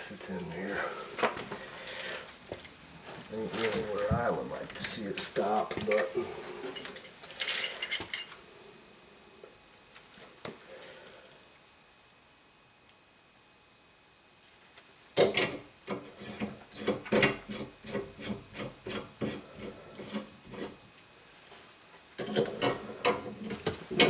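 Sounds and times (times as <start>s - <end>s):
rubbing and scraping strokes: 17.5s - 20.8s.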